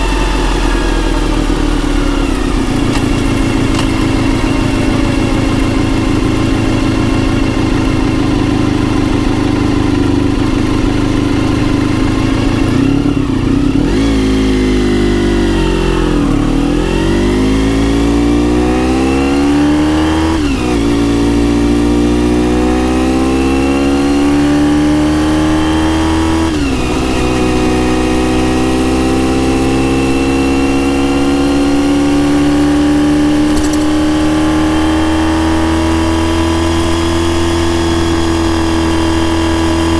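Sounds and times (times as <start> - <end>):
gear upshifts: 0.0 - 10.0, 23.4 - 30.9, 31.5 - 39.9
motorcycle engine revving: 0.0 - 39.9.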